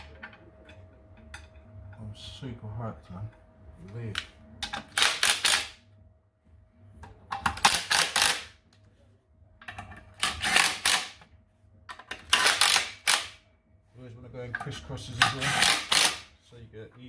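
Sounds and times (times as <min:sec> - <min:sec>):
impact wrench hammering: 0:04.6 - 0:05.8, 0:07.3 - 0:08.5, 0:09.7 - 0:11.3, 0:11.9 - 0:13.4, 0:15.2 - 0:16.3.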